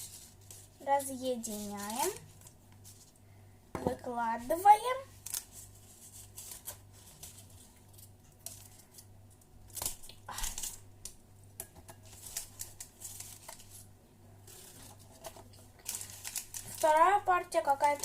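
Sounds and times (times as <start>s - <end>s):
utensil scraping cookies: 0.0s - 3.1s, 11.9s - 18.0s
low steady hum: 0.0s - 18.0s.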